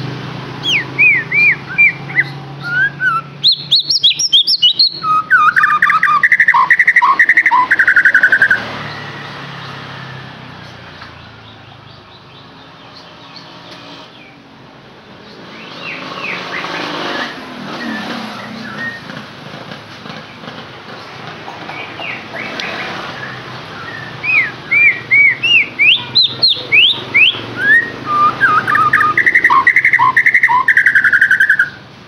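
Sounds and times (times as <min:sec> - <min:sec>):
bird singing whistled phrases: 0:00.6 - 0:09.4, 0:23.2 - 0:31.8.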